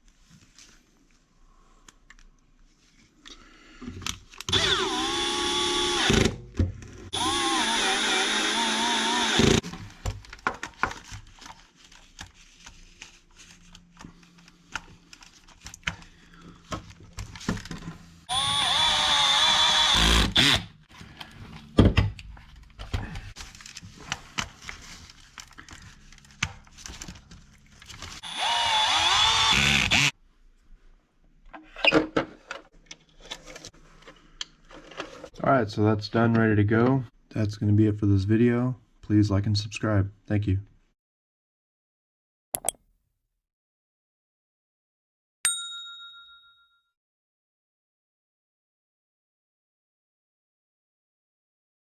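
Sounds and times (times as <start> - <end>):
electric screwdriver whirring: 4.5 - 6.3, 7.1 - 9.6, 18.3 - 20.7, 28.2 - 30.1
bell-like ding: 45.5 - 46.9.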